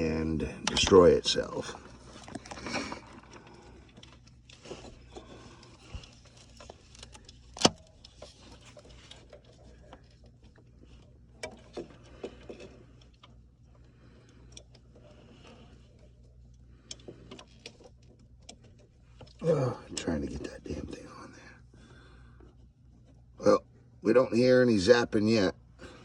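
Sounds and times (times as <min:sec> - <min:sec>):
faint steady low hum: 0:00.0 - 0:26.0
small metallic clicks and rattles: 0:01.8 - 0:21.1.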